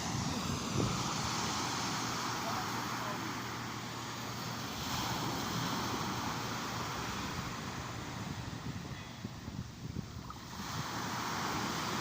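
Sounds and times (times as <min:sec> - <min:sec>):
wind buffeting microphone: 0:00.0 - 0:01.7, 0:07.0 - 0:12.0
sea waves washing on shore: 0:00.0 - 0:12.0.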